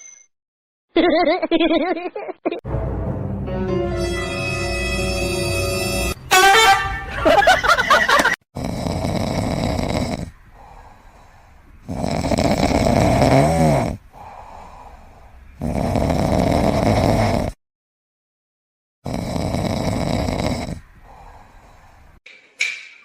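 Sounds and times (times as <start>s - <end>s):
pet snoring heavily: 8.6s - 10.9s, 11.8s - 15.0s, 15.6s - 17.6s, 19.0s - 21.7s
quiet breaths: 8.8s - 16.7s, 19.3s - 22.2s.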